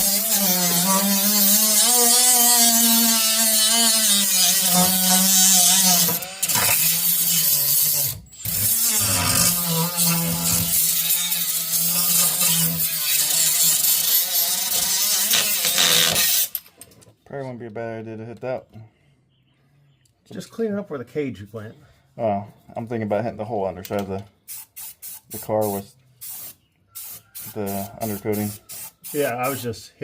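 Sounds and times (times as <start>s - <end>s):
loud hiss: 24.5s - 29.7s.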